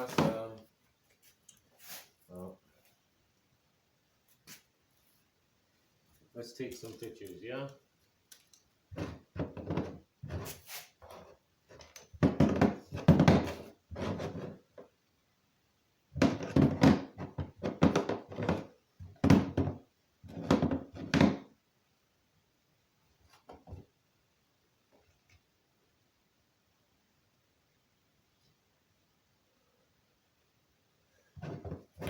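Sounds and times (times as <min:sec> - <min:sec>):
objects thunking on hard surface: 0:00.0 - 0:00.4, 0:11.8 - 0:14.6, 0:16.2 - 0:21.5, 0:31.4 - 0:32.0.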